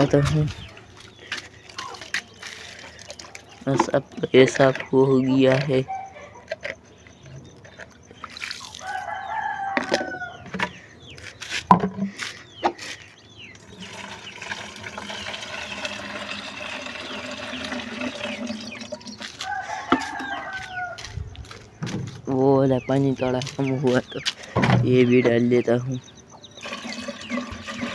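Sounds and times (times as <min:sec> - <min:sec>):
rooster crowing: 0:08.7 - 0:10.6, 0:18.9 - 0:21.7
water being poured: 0:13.6 - 0:19.4, 0:26.6 - 0:27.9
knocks and clatter: 0:21.5 - 0:22.3.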